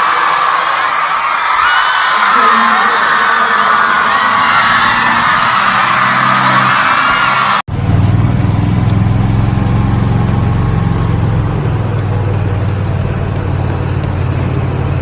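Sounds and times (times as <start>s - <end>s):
vehicle engine droning: 4.2s - 15.0s.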